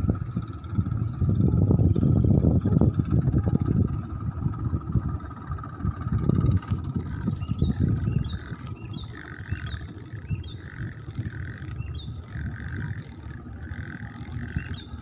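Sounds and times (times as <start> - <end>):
steady low rumble: 0.0 - 15.0
bird chirping: 7.1 - 15.0.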